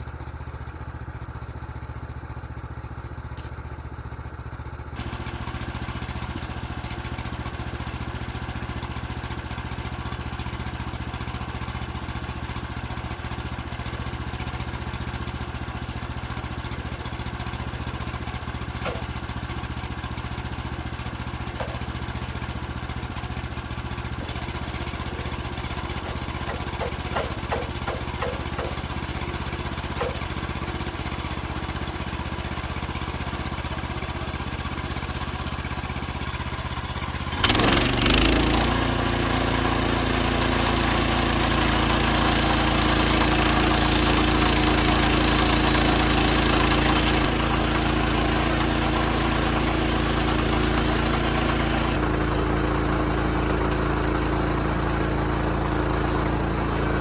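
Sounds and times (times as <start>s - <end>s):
small petrol engine running: 0.0s - 57.0s
light knocks: 26.0s - 28.8s, 30.0s - 30.3s.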